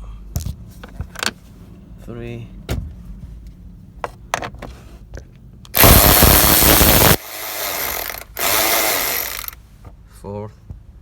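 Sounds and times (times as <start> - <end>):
power driver spinning out screw: 5.8 - 9.6.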